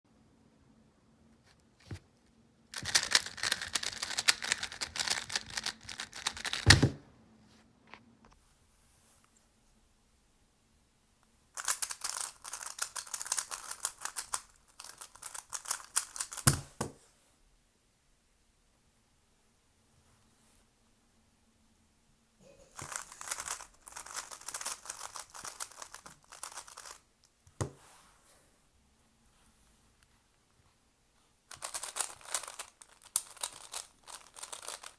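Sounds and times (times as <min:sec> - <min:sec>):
puzzle cube clicking: 0:02.8 - 0:07.0, 0:11.6 - 0:16.8, 0:22.8 - 0:27.0, 0:31.5 - 0:34.9.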